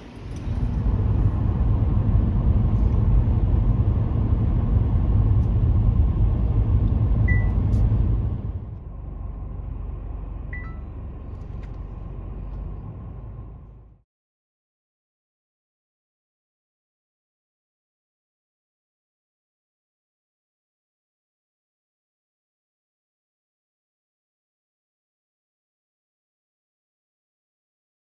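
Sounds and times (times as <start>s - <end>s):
road and engine rumble: 0.0s - 14.0s
short high beeps: 10.6s - 10.9s.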